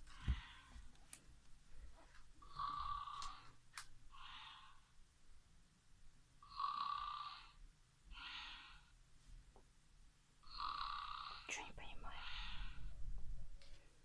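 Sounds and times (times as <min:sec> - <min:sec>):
faint rasping snoring: 0:02.4 - 0:03.5, 0:06.4 - 0:08.9, 0:10.4 - 0:11.6.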